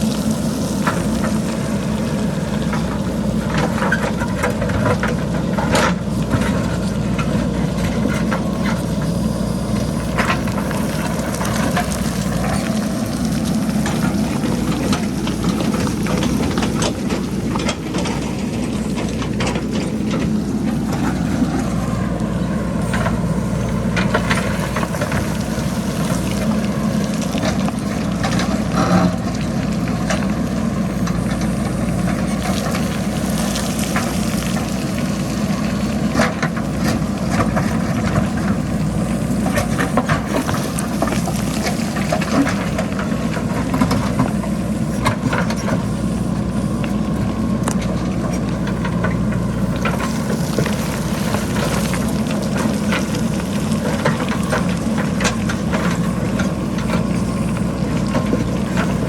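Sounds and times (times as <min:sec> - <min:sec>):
diesel engine running: 0:00.0 - 0:59.0
rocks tumbling down hillside: 0:00.0 - 0:59.0.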